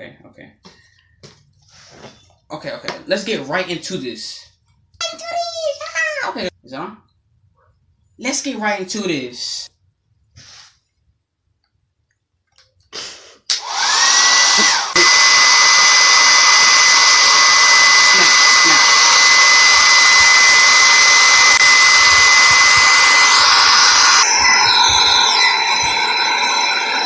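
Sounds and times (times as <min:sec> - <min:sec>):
hair dryer click: 0:13.5 - 0:26.3
hair dryer motor whine: 0:13.5 - 0:27.0.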